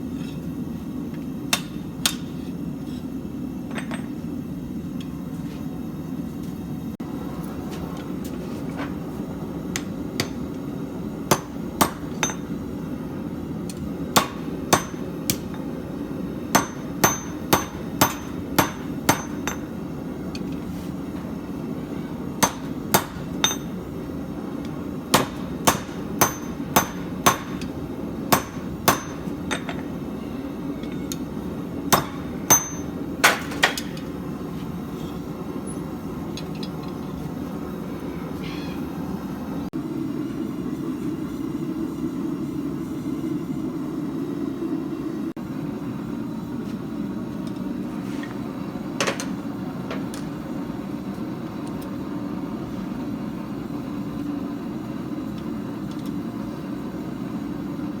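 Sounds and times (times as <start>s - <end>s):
steady low hum: 0.0s - 58.0s
hammer striking steel on anvil: 1.5s - 2.4s, 11.3s - 12.6s, 13.7s - 15.7s, 16.5s - 19.8s, 22.4s - 23.8s, 25.1s - 30.0s, 31.9s - 34.0s.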